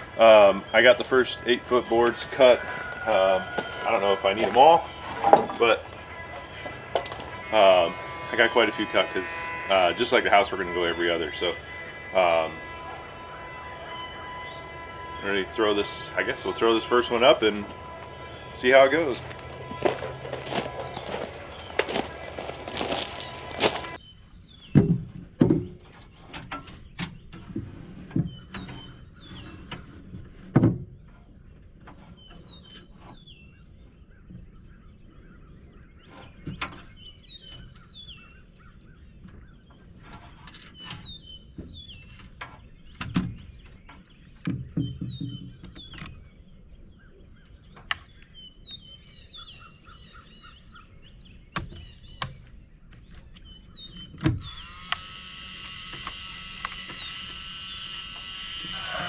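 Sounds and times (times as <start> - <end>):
small birds chirping: 0.0 - 24.5.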